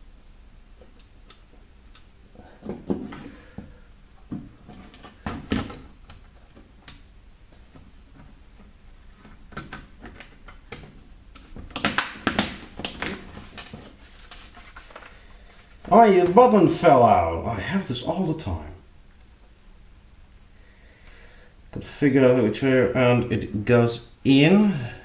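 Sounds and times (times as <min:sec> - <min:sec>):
plastic clicks and knocks: 0:09.2 - 0:13.2.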